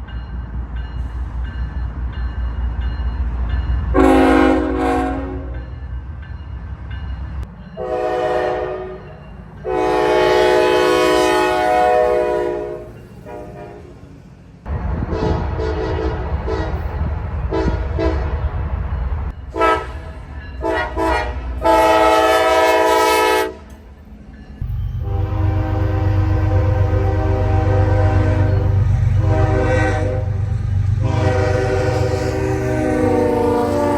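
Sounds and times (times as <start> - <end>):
train rumbling: 0.0 - 33.9
locomotive air horn blasts: 3.9 - 5.6, 7.8 - 14.0, 15.1 - 16.9, 17.5 - 18.4, 19.5 - 23.7, 25.0 - 33.9.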